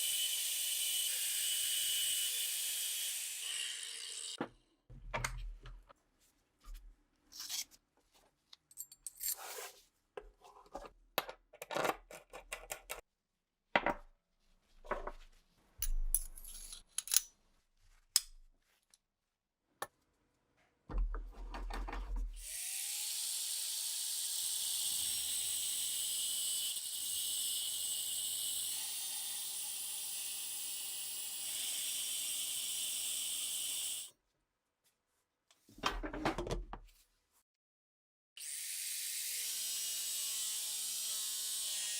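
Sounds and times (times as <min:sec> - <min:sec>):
tools clicking and scraping: 0:07.3 - 0:07.8, 0:08.6 - 0:13.0, 0:15.8 - 0:17.4, 0:18.1 - 0:18.4.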